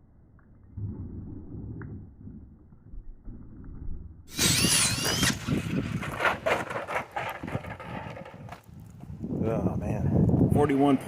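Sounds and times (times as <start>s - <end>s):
electric motor high whine: 4.3s - 5.5s
tyre noise on asphalt: 4.3s - 11.0s.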